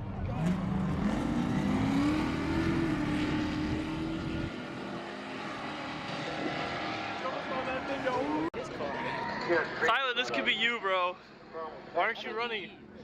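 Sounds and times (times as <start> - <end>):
drag cars accelerating: 0.0 - 9.8.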